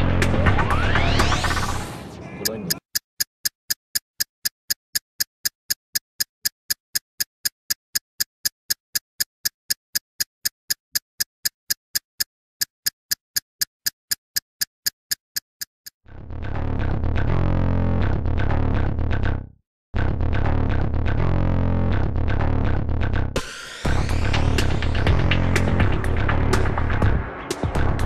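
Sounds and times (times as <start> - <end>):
music with a beat: 0.0 - 1.8, 23.4 - 28.0
sharp ticking: 2.4 - 16.0.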